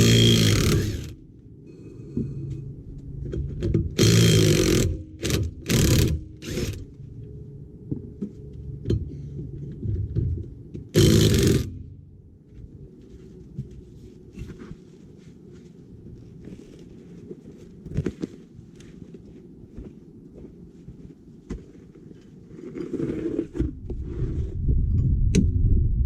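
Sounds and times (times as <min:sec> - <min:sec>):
power tool running: 0:00.0 - 0:01.2, 0:04.0 - 0:06.9, 0:11.0 - 0:11.7.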